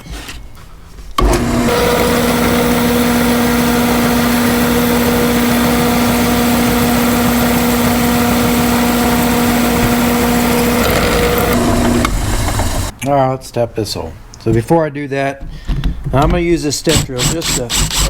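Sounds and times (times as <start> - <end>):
drill press drilling steel: 1.2 - 12.9, 16.9 - 18.0.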